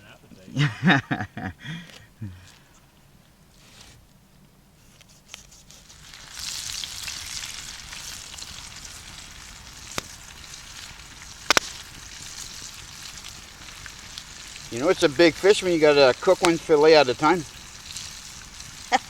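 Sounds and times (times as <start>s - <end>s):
fish frying in hot oil: 5.4s - 19.0s.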